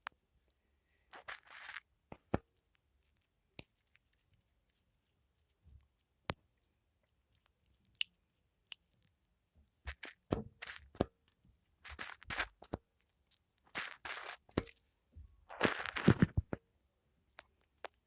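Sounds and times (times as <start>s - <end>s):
foam crackling and squishing: 11.8s - 12.8s, 13.7s - 14.8s, 15.5s - 16.6s.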